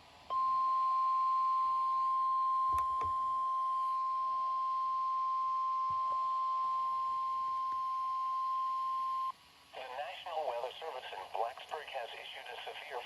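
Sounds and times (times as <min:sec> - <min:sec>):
high alarm beep: 0:00.3 - 0:09.3.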